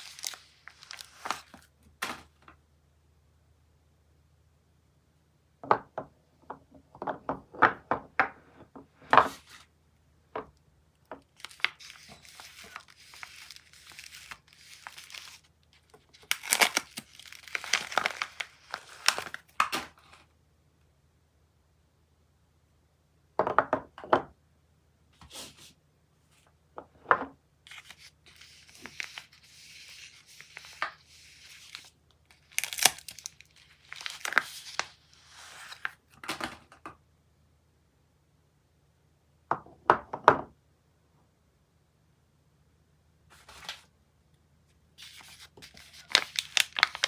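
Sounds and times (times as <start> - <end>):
wrappers crinkling and tearing: 0.0 - 1.7, 11.4 - 19.6, 27.7 - 35.0, 45.0 - 47.0.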